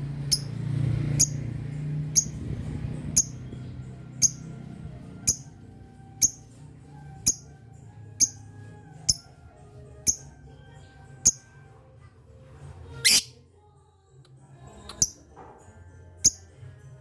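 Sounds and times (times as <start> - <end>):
lovebird chirping: 2.1 - 2.4, 3.1 - 4.6, 5.2 - 6.6, 7.2 - 9.4, 10.0 - 11.6, 13.0 - 13.4, 14.8 - 15.2.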